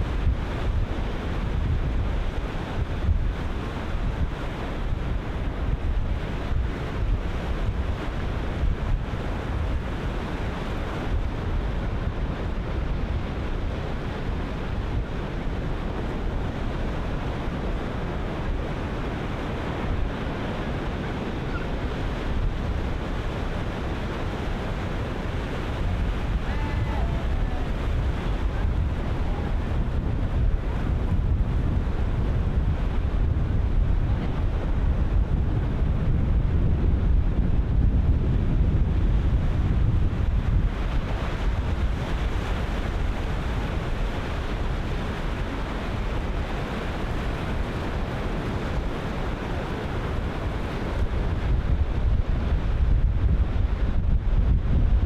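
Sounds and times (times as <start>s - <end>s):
wind buffeting microphone: 0.0s - 55.0s
ocean surf breaking: 6.4s - 36.1s.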